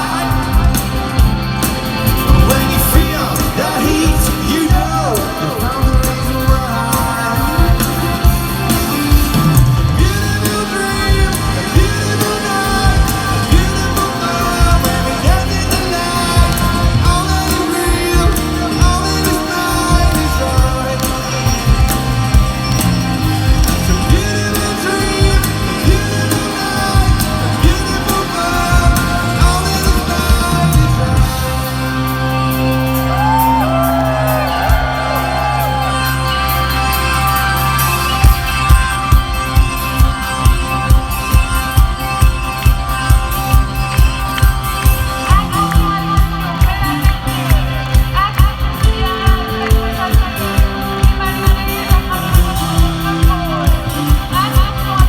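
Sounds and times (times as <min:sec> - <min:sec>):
person singing: 0:00.0 - 0:22.8, 0:23.4 - 0:35.9, 0:44.9 - 0:55.0
steady drum beat: 0:00.0 - 0:35.9, 0:38.1 - 0:55.0
live rock band playing: 0:00.0 - 0:55.0
sustained guitar chords: 0:00.0 - 0:55.0
drum hits: 0:00.6 - 0:05.1.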